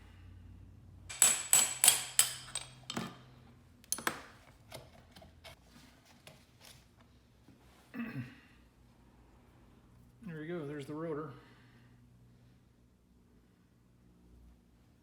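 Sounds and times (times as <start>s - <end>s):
ringing metal taps: 1.1s - 3.2s.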